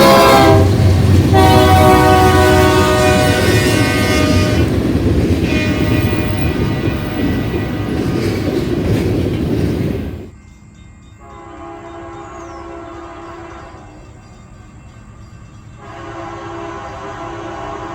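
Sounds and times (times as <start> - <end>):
locomotive air horn: 0.0 - 4.8, 5.4 - 8.4, 11.2 - 13.8, 15.8 - 17.9
passing train rumble: 0.0 - 17.9.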